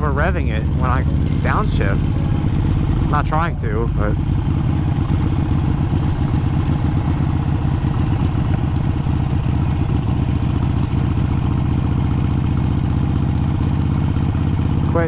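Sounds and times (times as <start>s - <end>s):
motorcycle engine running steadily: 0.0s - 15.0s.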